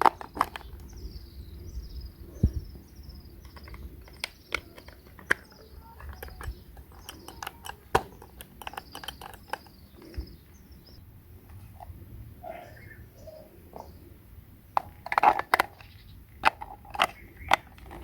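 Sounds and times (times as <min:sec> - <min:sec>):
clicks and taps of small objects: 0:03.4 - 0:10.3.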